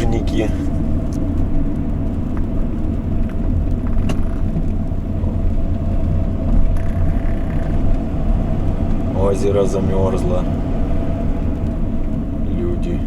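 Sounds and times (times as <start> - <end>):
van engine and road rumble: 0.0 - 13.0.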